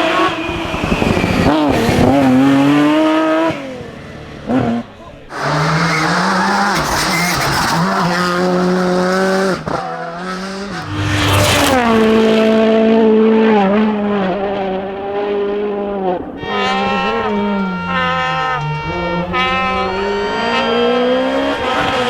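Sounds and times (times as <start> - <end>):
rally car engine at high revs: 0.0 - 22.0
tyre skid noise: 10.7 - 12.7.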